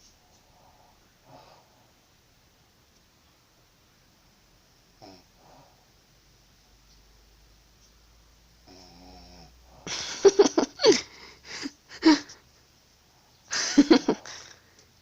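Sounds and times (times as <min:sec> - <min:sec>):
loud snoring: 0:05.0 - 0:05.8, 0:08.6 - 0:09.9.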